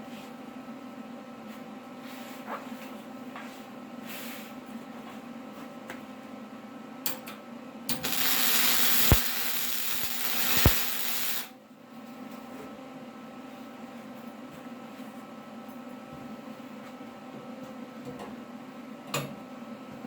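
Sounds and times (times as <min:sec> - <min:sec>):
arc welder hissing: 0:07.9 - 0:11.5
sharp pops: 0:08.0 - 0:11.5.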